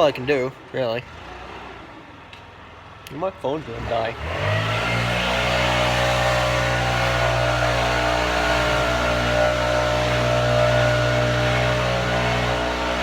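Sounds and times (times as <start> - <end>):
leaf blower engine running: 4.1 - 13.0.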